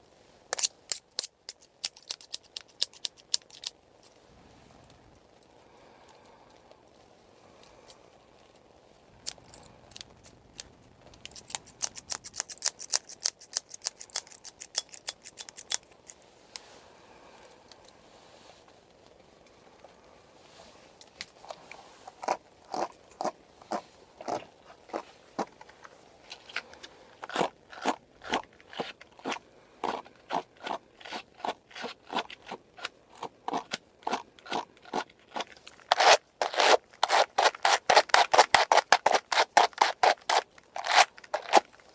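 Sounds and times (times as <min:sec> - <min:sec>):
scissors snipping: 0:11.2 - 0:16.2.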